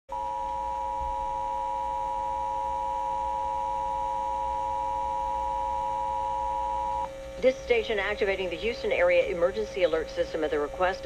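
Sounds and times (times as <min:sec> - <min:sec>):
two-tone alarm signal: 0:00.1 - 0:07.2
low steady hum: 0:00.1 - 0:11.0.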